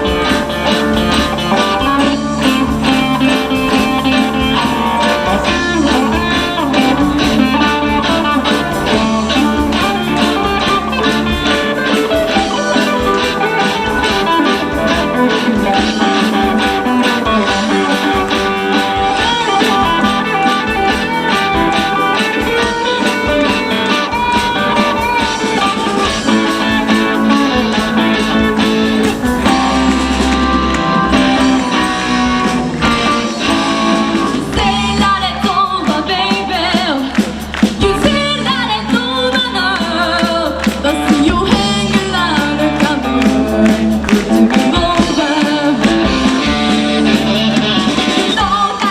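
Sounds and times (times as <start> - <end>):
live rock band playing: 0.0 - 48.9
person singing: 32.8 - 48.9.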